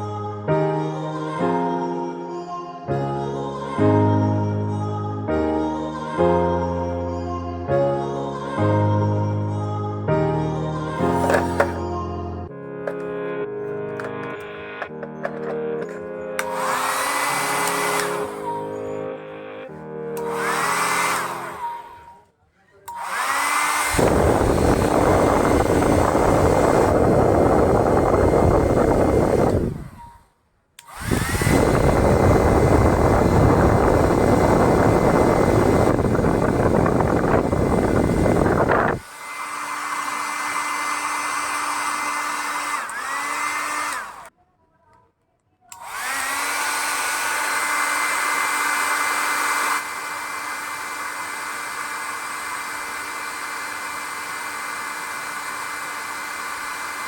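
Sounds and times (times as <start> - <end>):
hair dryer motor whining: 11.0 - 11.9, 12.8 - 44.3, 45.7 - 57.0
hair dryer running: 11.0 - 11.9, 12.8 - 22.2, 22.8 - 44.3, 45.7 - 57.0.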